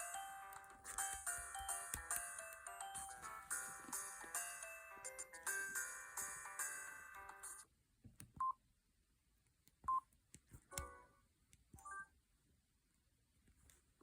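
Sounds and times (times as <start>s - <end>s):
phone ringtone melody: 0.0s - 7.6s.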